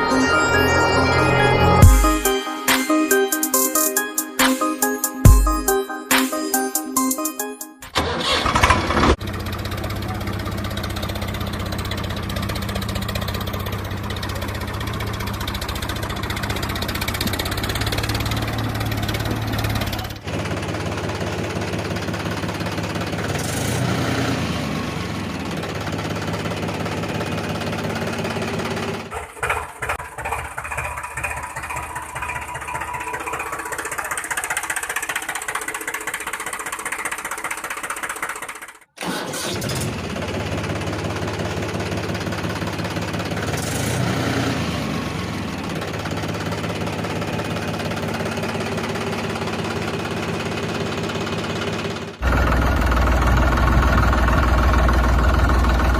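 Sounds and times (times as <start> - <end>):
engine running: 7.9 - 55.9.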